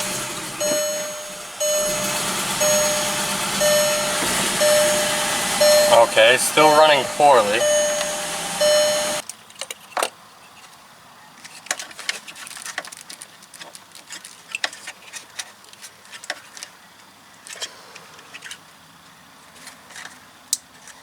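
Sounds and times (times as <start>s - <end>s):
steady whine: 0.0s - 9.2s.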